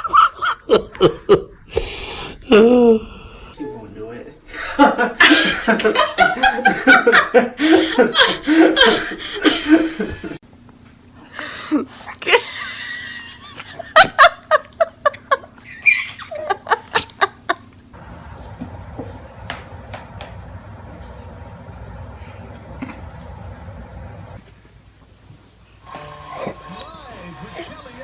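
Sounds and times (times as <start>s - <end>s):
people laughing: 0.0s - 10.4s.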